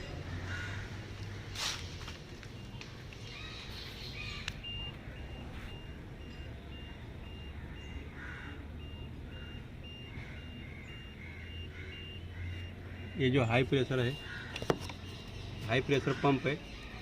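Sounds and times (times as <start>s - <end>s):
high-pitched electronic beeps: 3.5s - 8.1s, 8.8s - 17.0s.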